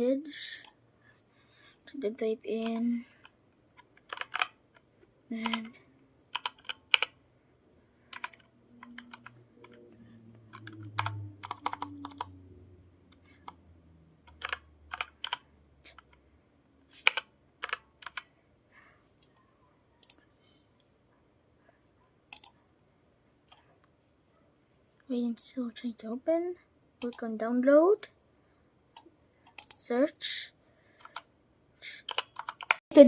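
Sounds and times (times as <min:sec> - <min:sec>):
mechanical keyboard key clicks: 0:04.0 - 0:04.6, 0:10.5 - 0:12.3, 0:14.3 - 0:15.4, 0:17.0 - 0:18.2, 0:32.1 - 0:32.8.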